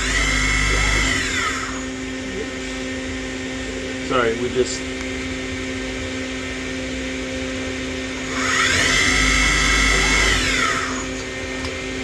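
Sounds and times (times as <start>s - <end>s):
lathe spindle whine: 0.0s - 12.0s
steady machine hum: 0.0s - 12.0s.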